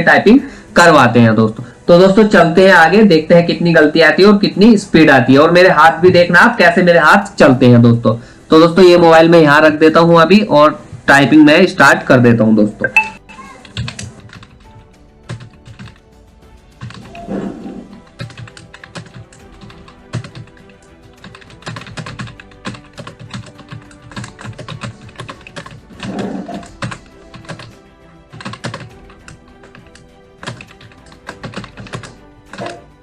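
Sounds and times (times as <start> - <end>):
background music: 0.0 - 33.0
fast keyboard typing: 13.6 - 16.0, 16.8 - 17.3, 17.9 - 32.9.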